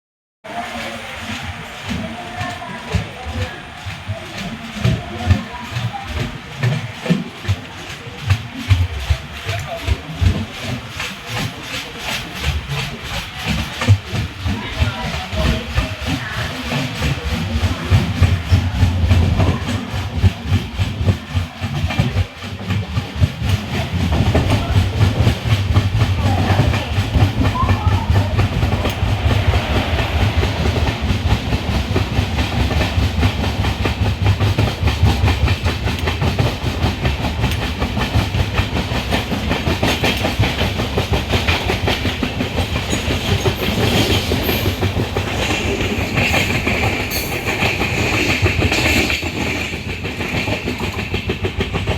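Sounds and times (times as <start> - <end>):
train running on rails: 0.4 - 51.9.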